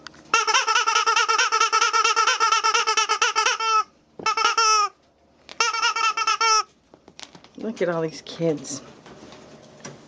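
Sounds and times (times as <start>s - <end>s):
rubber squeaky toy squeaking: 0.4s - 5.0s, 5.6s - 6.7s.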